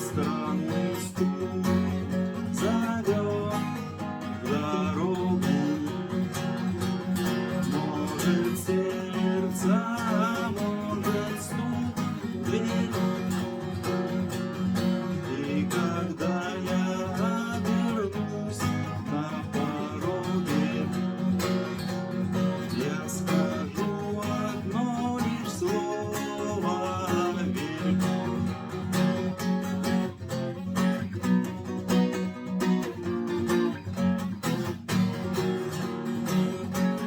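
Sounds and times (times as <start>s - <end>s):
acoustic guitar strumming: 0.0s - 37.0s
gliding guitar melody: 0.0s - 37.0s.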